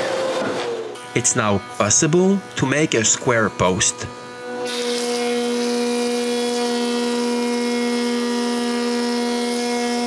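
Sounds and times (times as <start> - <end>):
woodworking power tool humming: 0.0 - 10.0.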